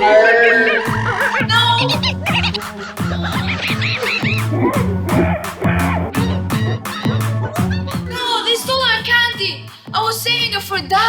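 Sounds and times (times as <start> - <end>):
high squeaky sounds: 0.0 - 8.6
upbeat music with beat: 0.5 - 11.0.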